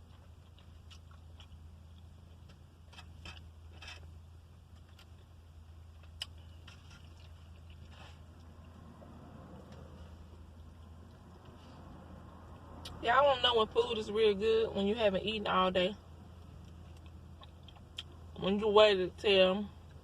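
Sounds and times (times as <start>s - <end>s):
person chewing food: 0.0s - 13.0s, 16.3s - 18.3s.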